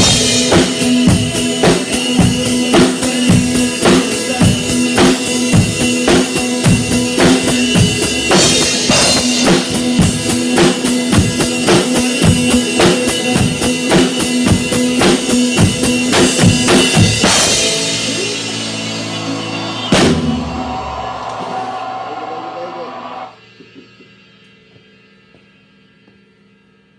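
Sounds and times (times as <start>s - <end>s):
country band music: 0.0s - 23.3s
drum kit beat: 0.0s - 24.1s
held chord ringing: 15.9s - 23.3s.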